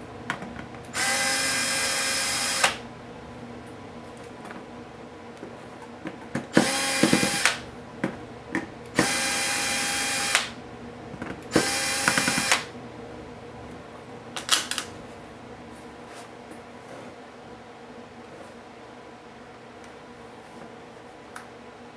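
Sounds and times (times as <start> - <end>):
electric screwdriver running: 1.0 - 2.8, 6.6 - 7.7, 9.0 - 10.6, 11.5 - 12.7.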